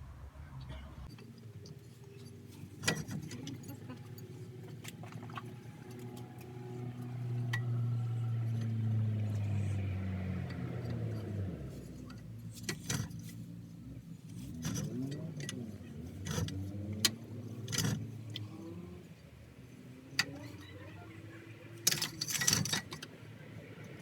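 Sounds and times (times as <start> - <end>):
engine hum: 0.0 - 24.0
metallic clinks and clicks: 1.1 - 13.5, 21.7 - 24.0.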